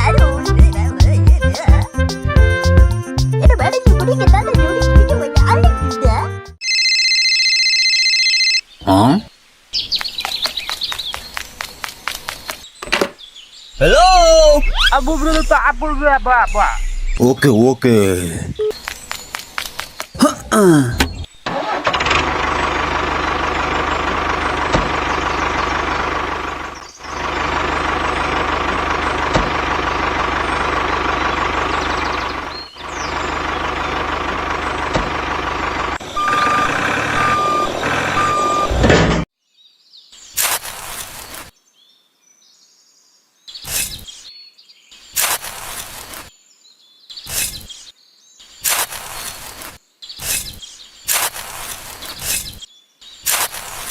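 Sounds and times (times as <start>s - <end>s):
vehicle engine running: 21.6s - 38.8s
short beeps: 36.2s - 38.8s.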